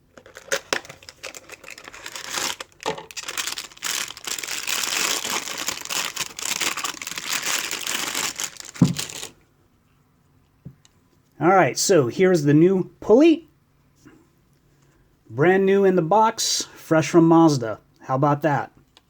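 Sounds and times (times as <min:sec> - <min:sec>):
packaging crinkling and tearing: 0:00.1 - 0:09.4.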